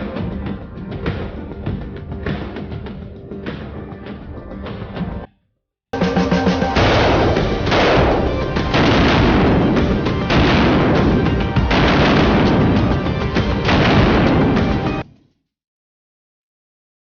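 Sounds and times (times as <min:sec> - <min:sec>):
loud music: 0:00.0 - 0:05.3, 0:06.0 - 0:15.0
automatic gunfire: 0:06.8 - 0:14.8.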